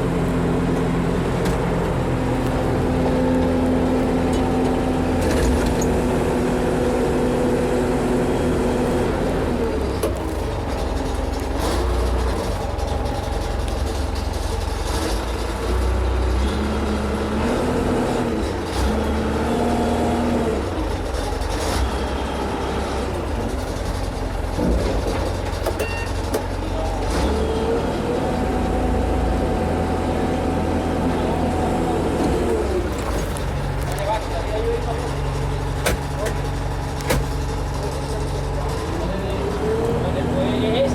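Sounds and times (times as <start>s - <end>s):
backhoe diesel engine digging: 0.0s - 40.9s
sharp knocks: 35.8s - 36.4s, 37.0s - 37.5s.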